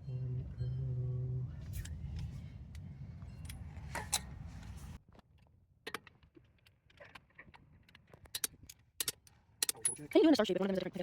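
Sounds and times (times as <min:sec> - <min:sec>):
low rumble: 0:00.0 - 0:05.0
metallic clicks of hand tools: 0:07.9 - 0:10.1.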